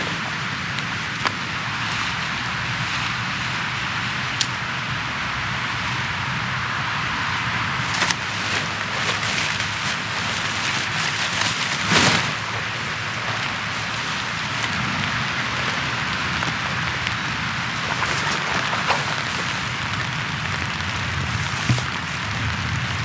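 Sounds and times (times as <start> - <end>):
steady rain: 0.0 - 23.0
taps and rustles: 21.3 - 22.2.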